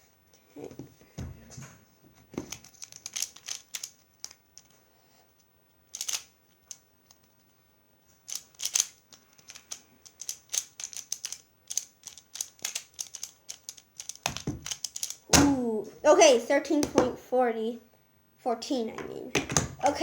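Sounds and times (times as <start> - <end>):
plastic puzzle clicking: 2.4 - 4.7, 5.9 - 7.3, 8.3 - 15.2.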